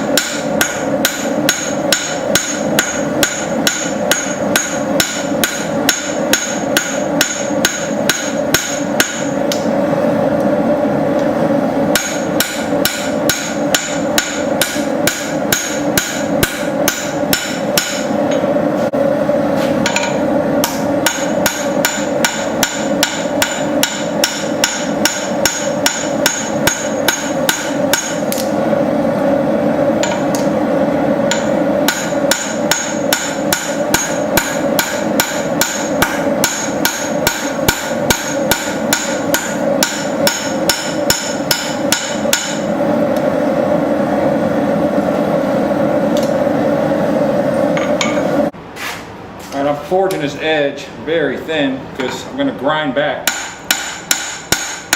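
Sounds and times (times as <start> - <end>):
hammer striking steel on anvil: 0.0 - 9.7, 11.9 - 18.5, 19.8 - 28.5, 30.0 - 30.6, 31.2 - 42.7, 53.2 - 54.9.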